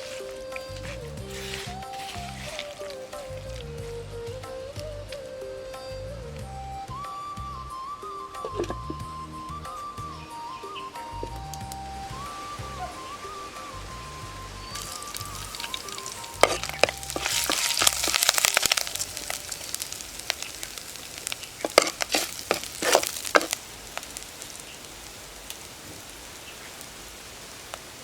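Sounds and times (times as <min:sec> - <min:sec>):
food sizzling in a pot: 0:00.0 - 0:03.8, 0:12.0 - 0:28.0
background music: 0:00.0 - 0:20.1
spoon scraping a pot: 0:21.6 - 0:23.6.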